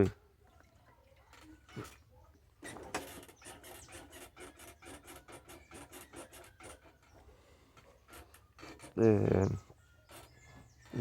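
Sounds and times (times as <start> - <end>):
motorcycle scratchy creaking: 2.6 - 7.3, 7.9 - 11.0.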